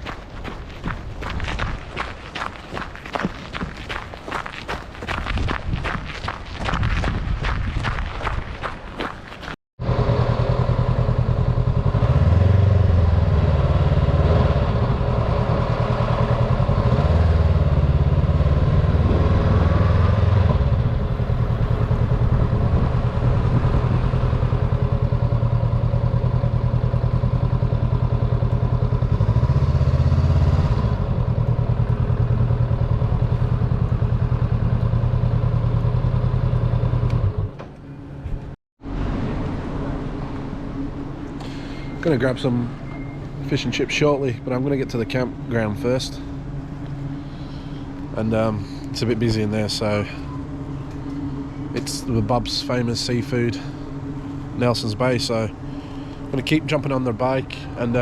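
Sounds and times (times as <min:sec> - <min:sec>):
motorcycle engine revving: 0:09.8 - 0:37.6.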